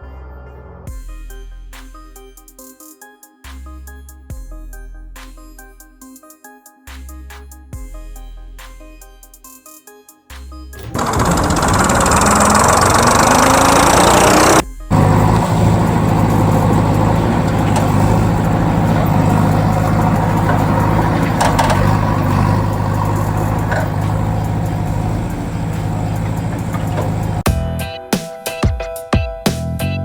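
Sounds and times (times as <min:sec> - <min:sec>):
tractor engine idling: 0:10.8 - 0:27.5.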